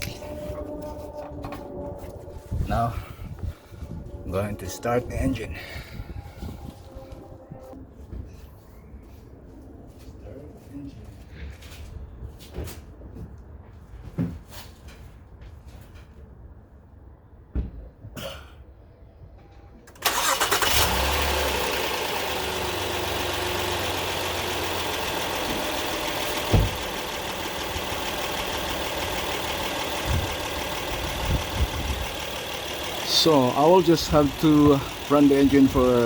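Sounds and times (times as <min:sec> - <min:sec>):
car engine cranking and idling: 0:00.0 - 0:07.7, 0:19.8 - 0:36.0
thump: 0:17.5 - 0:17.8, 0:26.5 - 0:26.8.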